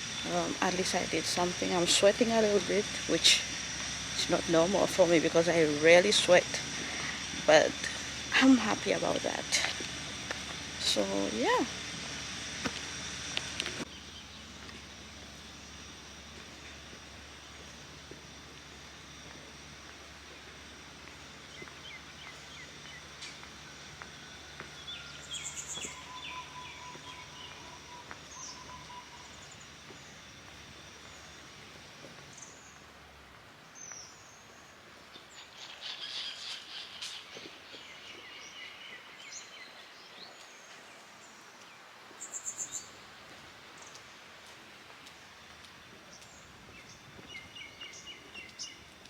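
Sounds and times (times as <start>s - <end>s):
birds chirping: 0.0s - 18.5s, 19.1s - 33.0s, 45.1s - 49.0s.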